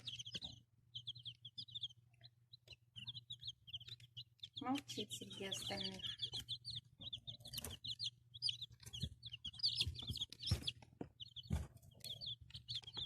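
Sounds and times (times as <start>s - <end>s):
chick peeping: 0.0s - 13.0s.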